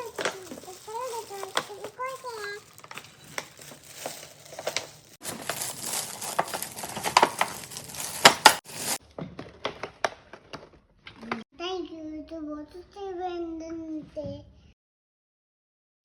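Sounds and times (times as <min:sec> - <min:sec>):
wrapping paper crinkling: 0:00.0 - 0:09.0.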